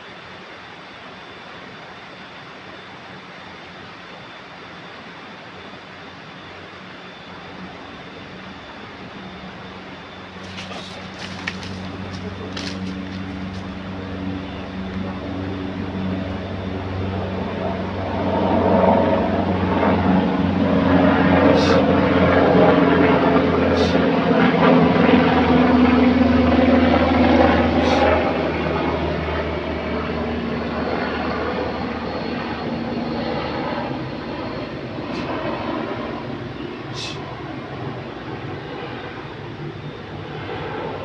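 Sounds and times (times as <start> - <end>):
passing vehicle engine hum: 8.4 - 41.0.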